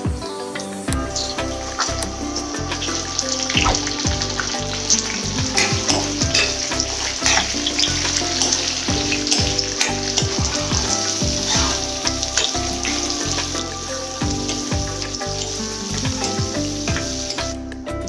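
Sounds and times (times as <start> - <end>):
background music with sliding bass: 0.0 - 18.0
food sizzling in a pan: 1.1 - 17.5.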